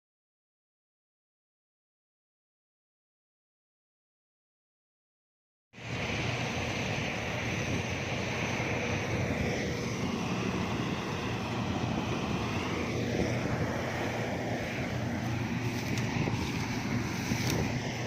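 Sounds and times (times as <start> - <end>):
machinery engine low drone: 5.8 - 18.0.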